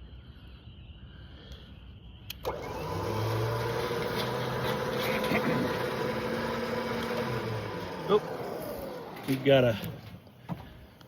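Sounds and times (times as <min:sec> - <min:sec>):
winch motor humming: 0:02.4 - 0:10.8.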